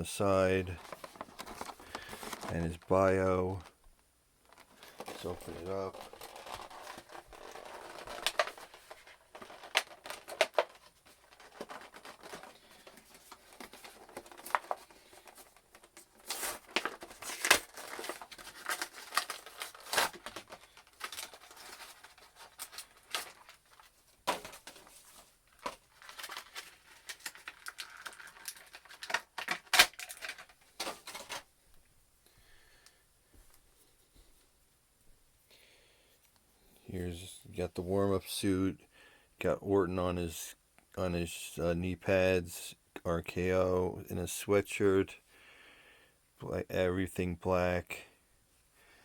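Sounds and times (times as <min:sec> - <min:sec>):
packaging crinkling and tearing: 0:00.7 - 0:03.7, 0:04.4 - 0:31.5.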